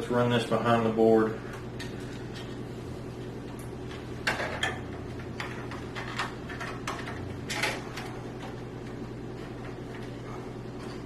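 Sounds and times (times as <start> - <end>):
steady low hum: 0.0 - 11.0
cable clicks and rustles: 3.4 - 11.0.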